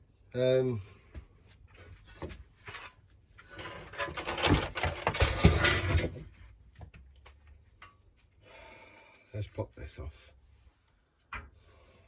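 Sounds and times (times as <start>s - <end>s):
plastic and metal parts rattling: 2.2s - 6.3s.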